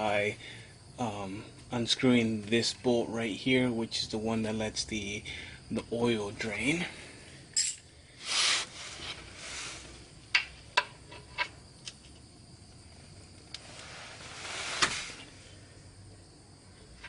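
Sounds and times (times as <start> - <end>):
scraping and hissing rustles: 8.0 - 11.6, 13.0 - 15.8.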